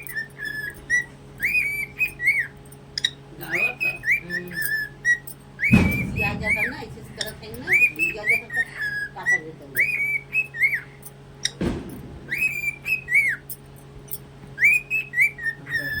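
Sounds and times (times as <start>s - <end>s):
cockatiel whistling: 0.0s - 10.9s, 12.3s - 13.4s, 14.6s - 16.0s
thud: 5.7s - 8.6s, 11.6s - 13.0s.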